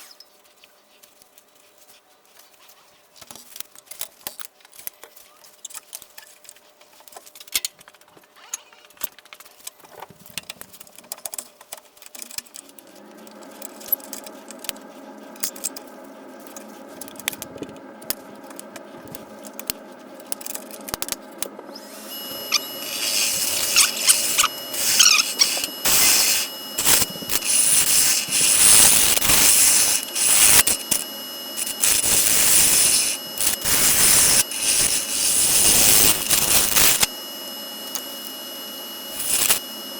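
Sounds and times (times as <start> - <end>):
small clicks and knocks: 3.2 - 12.8
wood lathe humming: 21.7 - 37.1, 39.0 - 39.6
tool scraping wood with squeal: 21.8 - 37.1, 39.1 - 39.8.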